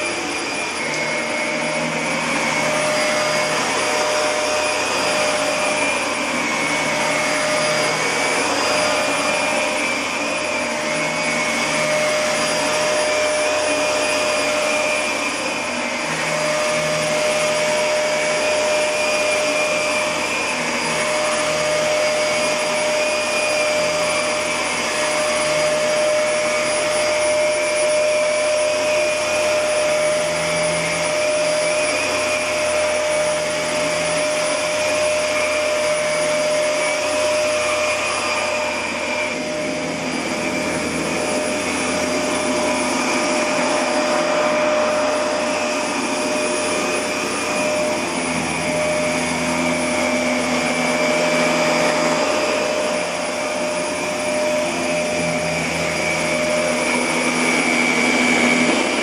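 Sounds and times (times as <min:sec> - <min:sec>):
small motor and fan whirring: 0:00.0 - 0:59.0.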